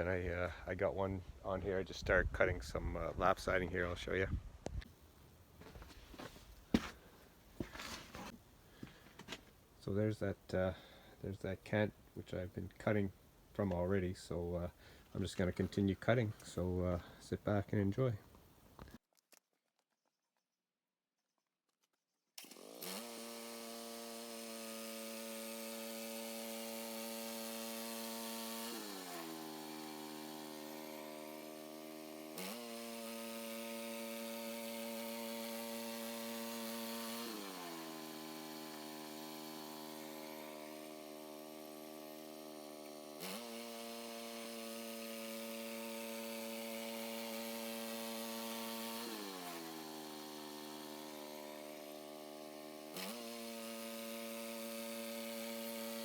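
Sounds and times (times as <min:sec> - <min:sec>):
sawmill engine cutting wood: 0:22.4 - 0:56.0.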